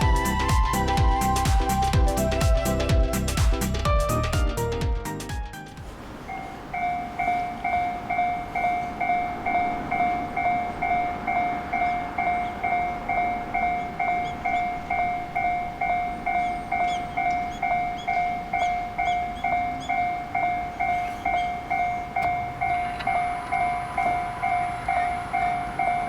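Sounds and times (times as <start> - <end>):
level crossing warning bell: 6.1 - 26.0.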